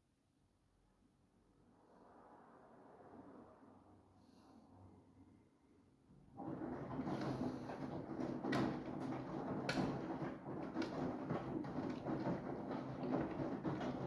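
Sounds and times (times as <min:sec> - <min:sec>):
washing machine running: 0:06.1 - 0:14.0.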